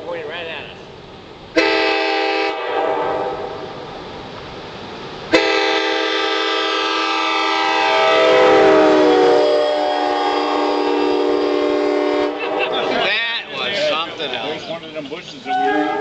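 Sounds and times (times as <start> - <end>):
train horn blast: 1.6 - 3.6, 5.3 - 13.0, 15.5 - 16.0.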